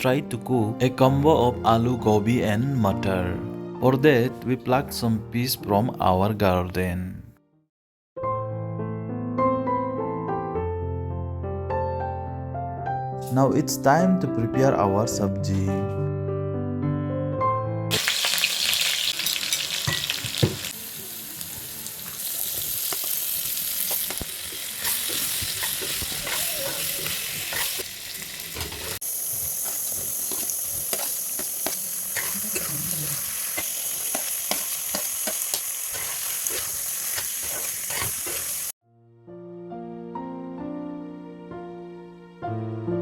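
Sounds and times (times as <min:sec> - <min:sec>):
vegetables sizzling in oil: 0:17.9 - 0:38.8
utensil stirring in a pan: 0:22.4 - 0:38.7.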